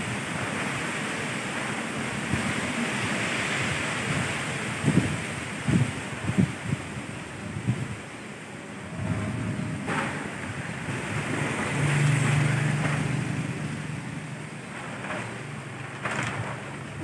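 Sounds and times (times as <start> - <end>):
strong wind on microphone: 0.0 - 14.6
low rumble: 8.8 - 17.0.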